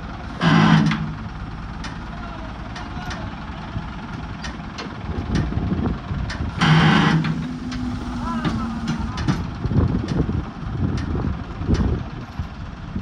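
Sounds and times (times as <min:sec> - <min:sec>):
engine idling with low knock: 0:00.0 - 0:12.8
loud pitched burst: 0:06.6 - 0:09.2.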